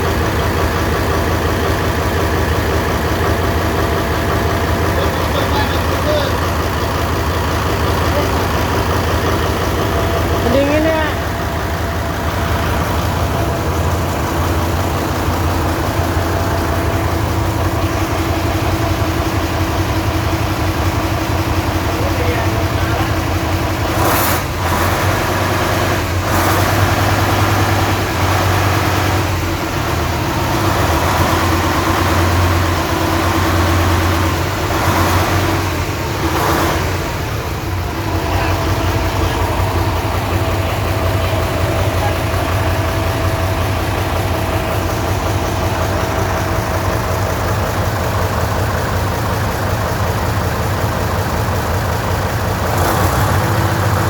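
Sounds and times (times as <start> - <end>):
diesel engine idling: 0.0 - 54.0.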